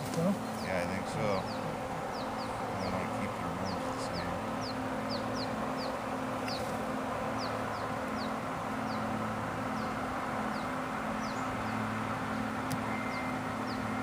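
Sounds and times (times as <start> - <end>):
honeybees buzzing: 0.0 - 14.0
bird chirping: 0.3 - 14.0.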